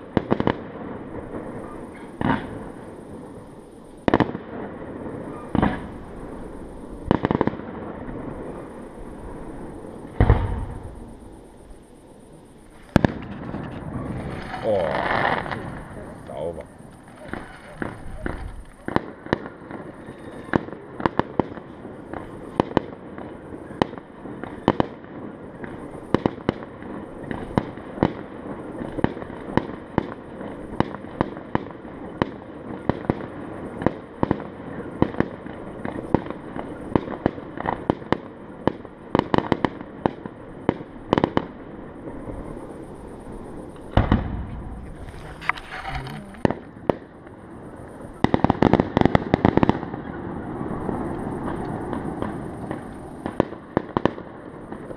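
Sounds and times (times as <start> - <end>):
heavy firework boom: 0.0 - 24.8, 40.7 - 47.2
fireworks bangs and pops: 0.0 - 54.9.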